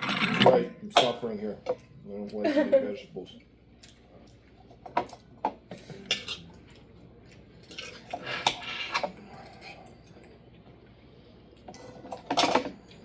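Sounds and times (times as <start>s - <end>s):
cutlery clinking on a plate: 5.8s - 6.6s.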